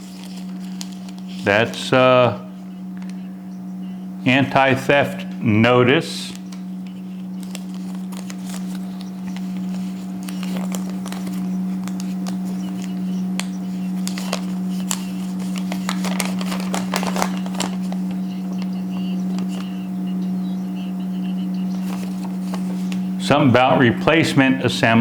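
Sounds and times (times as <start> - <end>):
paper rustling and crinkling: 0.0 - 1.9, 6.3 - 19.7, 21.7 - 23.1
steady low hum: 0.0 - 25.0.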